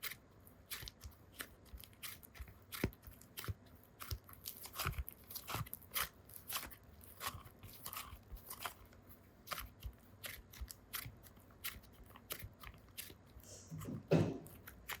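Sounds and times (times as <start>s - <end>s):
loud thump: 13.8s - 14.5s.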